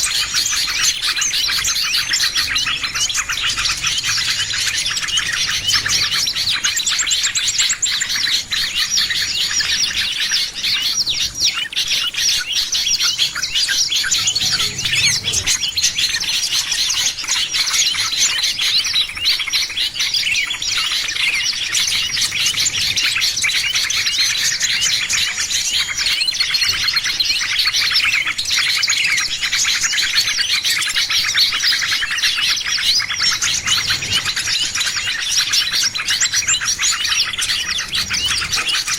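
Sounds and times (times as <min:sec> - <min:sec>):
songbirds chirping and twittering: 0:00.0 - 0:38.9.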